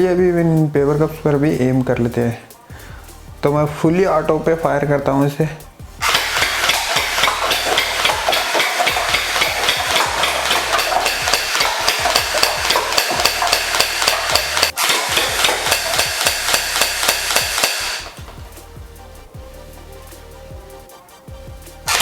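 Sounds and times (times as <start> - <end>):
toy rifle firing rapidly: 6.0 - 18.2.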